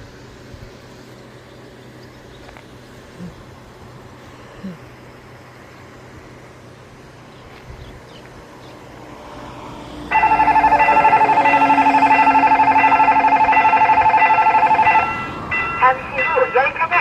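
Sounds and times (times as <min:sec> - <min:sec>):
level crossing warning bell: 0:10.1 - 0:17.0.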